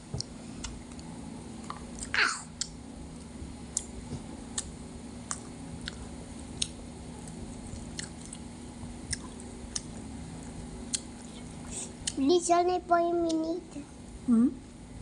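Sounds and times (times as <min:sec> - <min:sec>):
steady low hum: 0:00.0 - 0:15.0
person chewing crispy food: 0:05.3 - 0:12.2.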